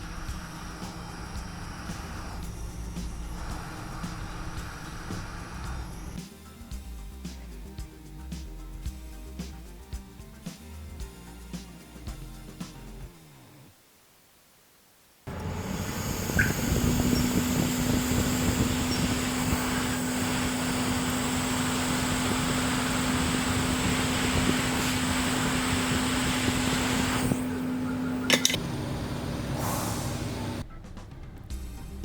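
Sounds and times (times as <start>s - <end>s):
electric fan running: 0.0s - 6.2s, 15.3s - 30.6s.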